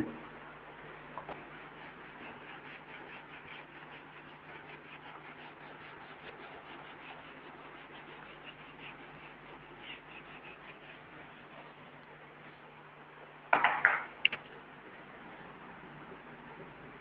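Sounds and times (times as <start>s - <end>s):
faint low hum: 0.0s - 17.0s
marker squeaking on whiteboard: 1.2s - 11.9s.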